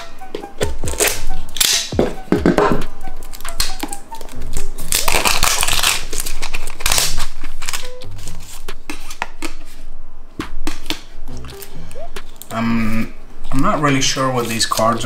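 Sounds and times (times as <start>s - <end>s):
soft background music: 0.0s - 10.1s
packaging crinkling and tearing: 3.2s - 9.8s.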